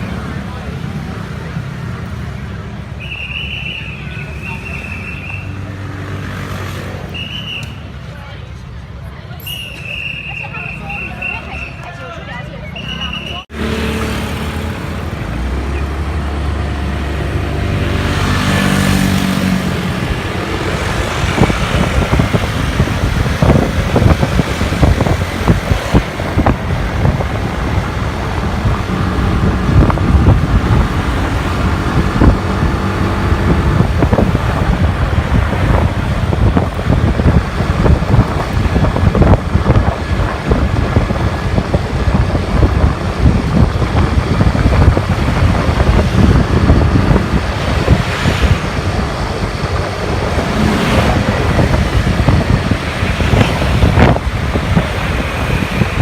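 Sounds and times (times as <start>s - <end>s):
road and wind noise: 0.0s - 56.0s
car engine accelerating: 13.5s - 56.0s
wind buffeting microphone: 16.9s - 56.0s.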